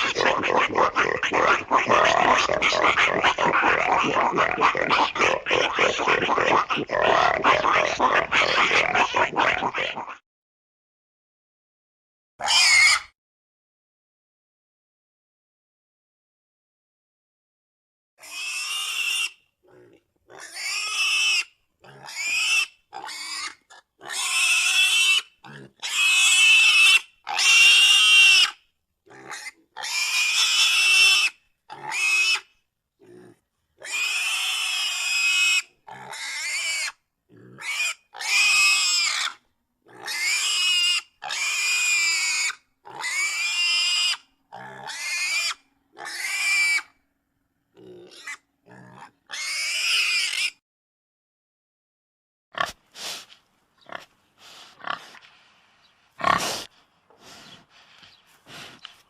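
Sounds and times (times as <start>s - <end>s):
pig squealing: 0.0s - 10.2s, 12.4s - 13.1s, 18.2s - 47.0s, 47.8s - 50.6s, 56.2s - 56.7s.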